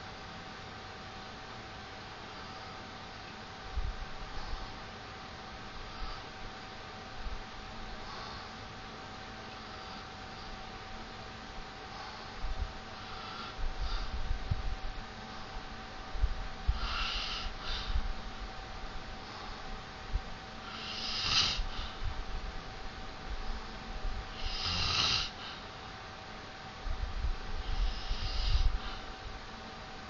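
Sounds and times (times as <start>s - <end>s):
man snoring: 16.7s - 17.9s, 20.6s - 21.9s, 24.3s - 25.4s, 27.6s - 29.0s.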